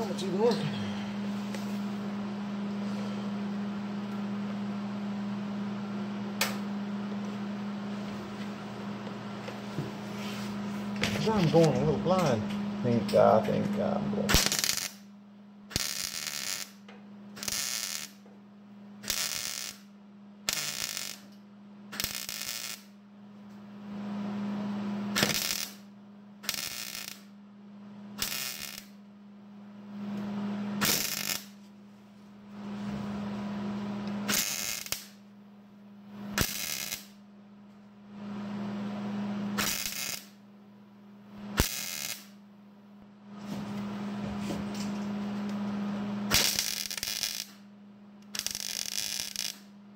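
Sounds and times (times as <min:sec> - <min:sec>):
low electrical hum: 0:00.0 - 0:49.9
welder crackling bursts: 0:13.4 - 0:15.1, 0:15.7 - 0:16.8, 0:17.4 - 0:18.2, 0:19.0 - 0:19.9, 0:20.5 - 0:23.0, 0:25.1 - 0:25.8, 0:26.4 - 0:27.3, 0:28.2 - 0:29.0, 0:30.8 - 0:31.6, 0:34.2 - 0:35.2, 0:36.3 - 0:37.2, 0:39.5 - 0:40.4, 0:41.5 - 0:42.4, 0:46.3 - 0:47.6, 0:48.2 - 0:49.7.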